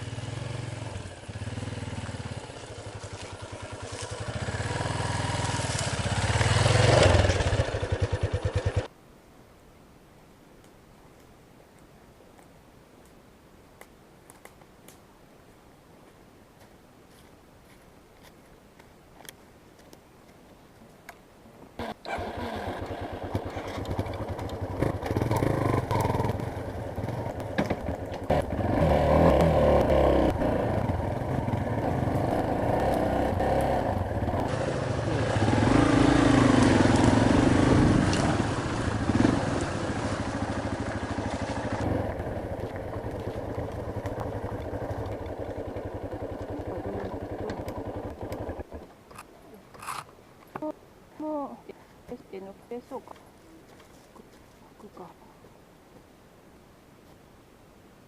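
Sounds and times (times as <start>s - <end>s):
motorbike engine revving: 0.0s - 8.9s, 21.8s - 48.9s.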